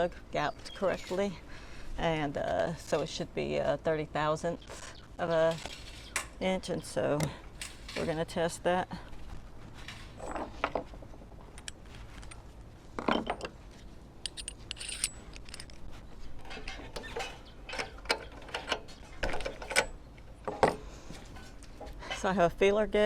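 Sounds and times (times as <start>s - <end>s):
metal hand tools clinking: 14.2s - 15.7s.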